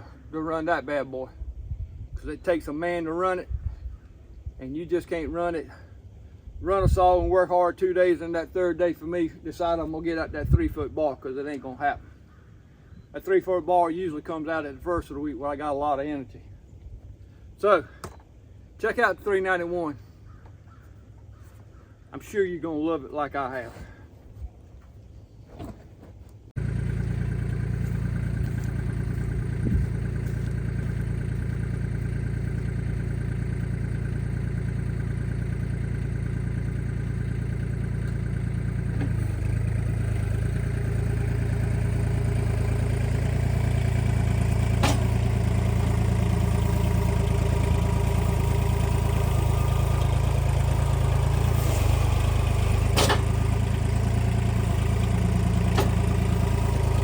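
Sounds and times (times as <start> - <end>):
engine running steadily: 23.5 - 57.0
sharp metal clanks: 44.8 - 45.2, 52.9 - 53.4.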